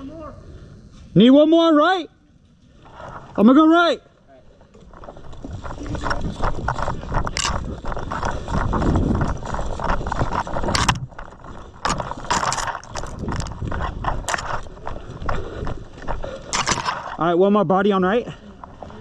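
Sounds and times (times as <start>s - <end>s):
footsteps: 4.5s - 17.4s
camera handling rumble: 4.8s - 17.2s
gear rattling: 4.9s - 17.3s.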